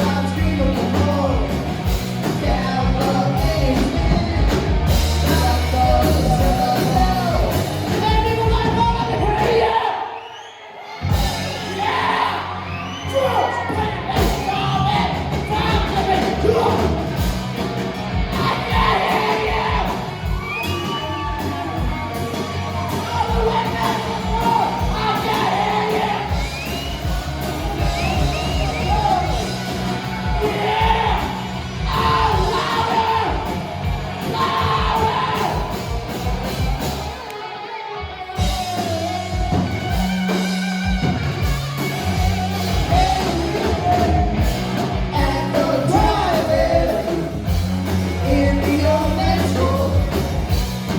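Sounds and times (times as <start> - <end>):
live rock band playing: 0.0 - 9.8, 10.9 - 50.9
lead singer singing: 0.0 - 10.0, 22.9 - 27.0, 30.2 - 35.8, 42.7 - 50.6
people yelling: 5.3 - 17.2, 18.2 - 40.0.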